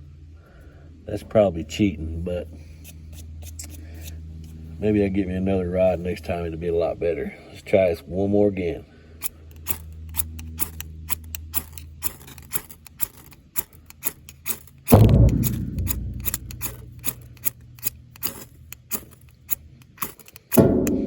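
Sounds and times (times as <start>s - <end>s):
heavy booming bass hit: 14.9s - 17.4s
clock-like ticking beat: 14.9s - 17.9s
low sustained bass tones: 14.9s - 18.1s.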